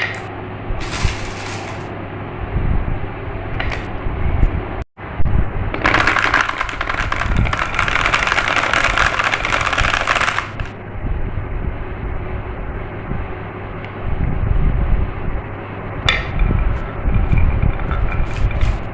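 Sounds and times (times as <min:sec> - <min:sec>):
marbles clattering down track: 0:00.0 - 0:01.9, 0:05.7 - 0:10.7
low rolling rumble: 0:00.6 - 0:09.8.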